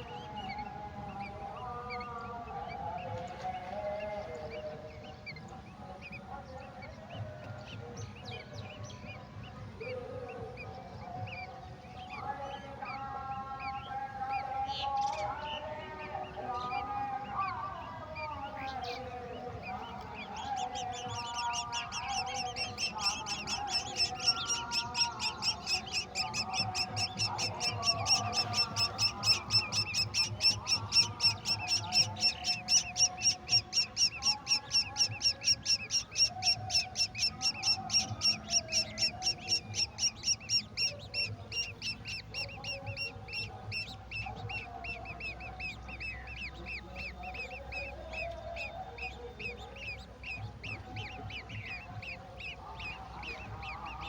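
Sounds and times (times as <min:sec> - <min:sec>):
nestlings chirping: 0:16.6 - 0:54.0.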